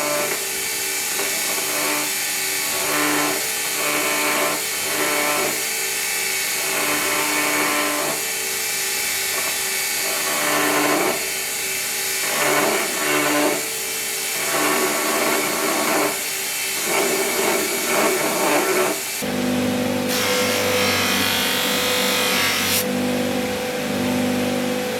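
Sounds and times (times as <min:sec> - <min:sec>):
power tool grinding metal: 0:01.0 - 0:05.6, 0:06.5 - 0:08.2, 0:09.0 - 0:19.3, 0:20.1 - 0:22.9.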